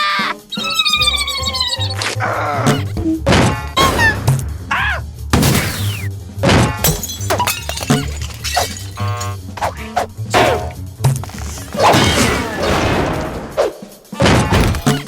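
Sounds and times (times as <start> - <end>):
background music: 0.0 - 15.0
cartoon hits and crashes: 3.8 - 4.3, 5.4 - 6.1, 6.8 - 13.2.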